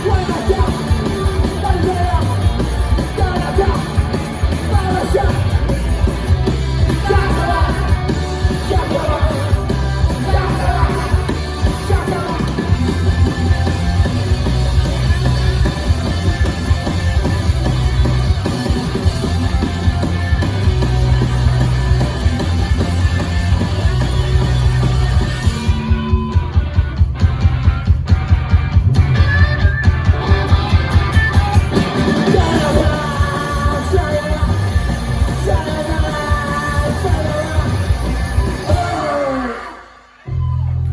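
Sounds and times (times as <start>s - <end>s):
pounding drum beat: 0.0s - 39.4s
punk rock band playing live: 0.0s - 40.6s
shouted vocals: 6.8s - 13.8s, 30.4s - 40.9s.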